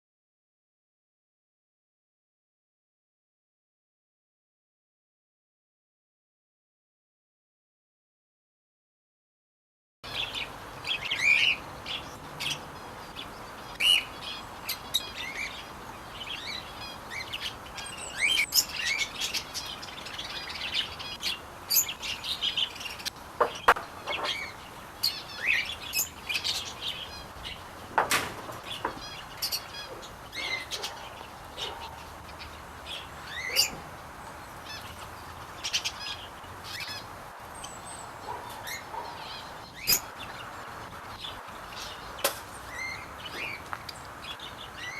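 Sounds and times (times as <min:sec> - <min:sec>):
small birds chirping: 0:10.0 - 0:44.9
steady background hiss: 0:10.1 - 0:44.9.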